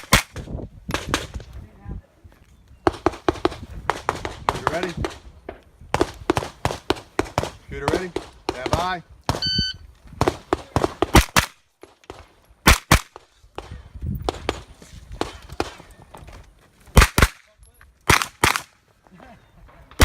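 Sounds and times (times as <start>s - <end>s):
rifle gunshots: 10.2s - 11.6s, 12.6s - 13.2s, 18.1s - 18.7s.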